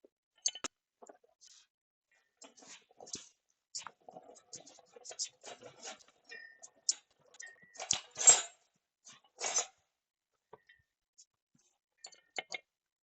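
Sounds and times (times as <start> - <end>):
tools clicking and scraping: 2.4 - 9.8.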